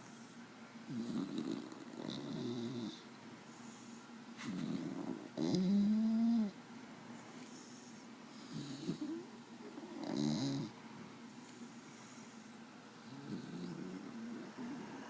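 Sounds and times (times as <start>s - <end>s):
dog snoring: 0.9s - 3.0s, 4.4s - 6.6s, 8.4s - 10.8s, 13.0s - 15.0s.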